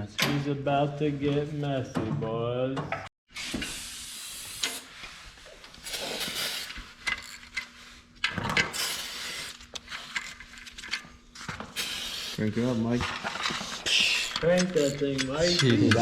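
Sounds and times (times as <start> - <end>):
rustling and scraping of tools: 4.5 - 16.0.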